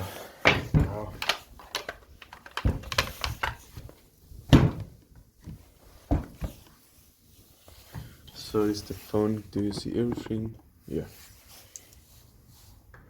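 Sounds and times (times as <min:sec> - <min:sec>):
hard objects knocking and clicking: 0:00.4 - 0:06.7.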